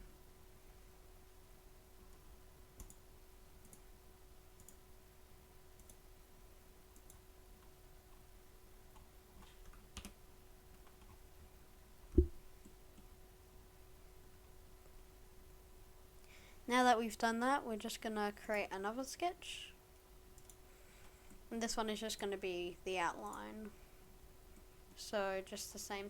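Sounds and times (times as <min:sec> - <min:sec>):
faint steady hum: 0:00.0 - 0:26.0
computer mouse clicks: 0:02.8 - 0:03.0, 0:03.6 - 0:03.9, 0:04.6 - 0:04.8, 0:05.8 - 0:06.0, 0:06.9 - 0:07.7, 0:08.9 - 0:10.2, 0:20.4 - 0:20.6
loud dull thump: 0:12.2 - 0:12.4.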